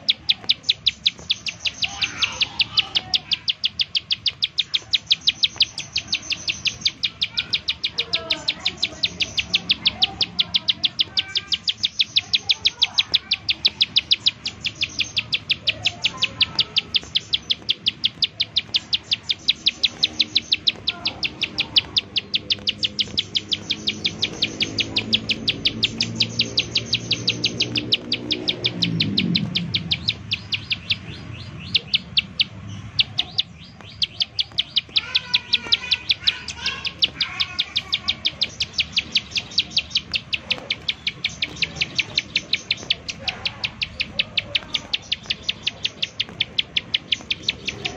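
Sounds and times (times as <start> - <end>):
bird rapid repeated call: 0.0 - 47.9.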